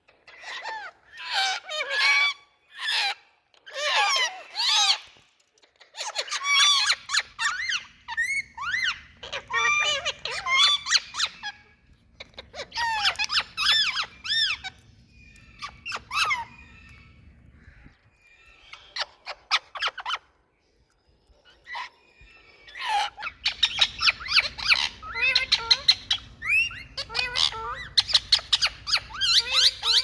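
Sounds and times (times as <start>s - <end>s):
parakeets squawking: 6.0s - 17.9s, 22.6s - 30.0s
faint low hum: 7.3s - 19.2s.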